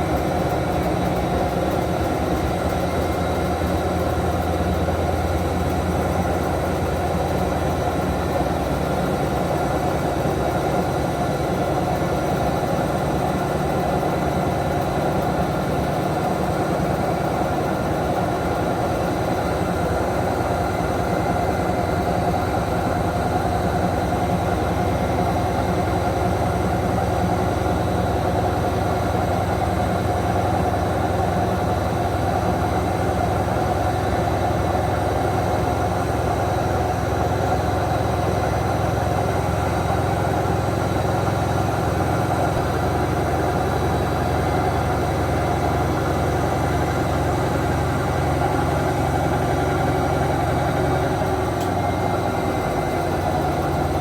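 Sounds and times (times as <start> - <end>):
washing machine humming: 0.0 - 54.0.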